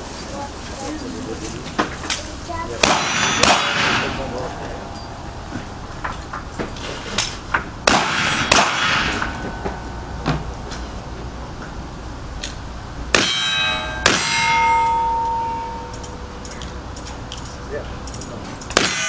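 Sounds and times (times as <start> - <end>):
ringing metal clangs: 2.8 - 6.8, 8.0 - 10.9, 13.1 - 19.0
metal clanks: 13.2 - 19.0.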